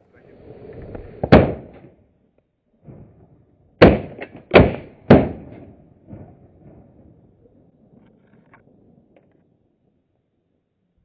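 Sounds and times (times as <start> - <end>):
shotgun shots with echo: 3.8 - 6.3.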